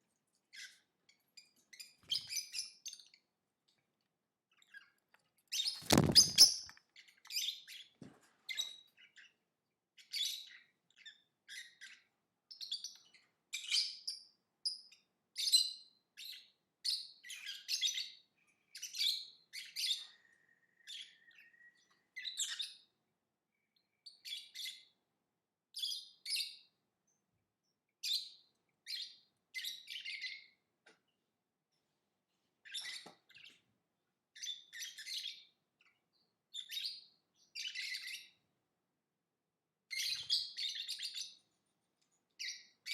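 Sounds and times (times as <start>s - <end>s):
lovebird chirping: 4.5s - 7.9s, 15.4s - 22.9s, 28.0s - 30.6s, 34.4s - 38.4s, 39.9s - 41.4s.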